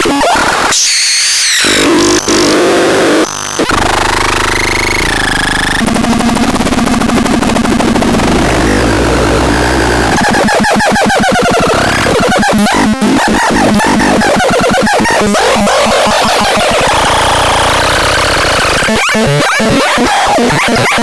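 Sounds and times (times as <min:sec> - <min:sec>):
harsh synthesizer tones: 0:04.6 - 0:21.0.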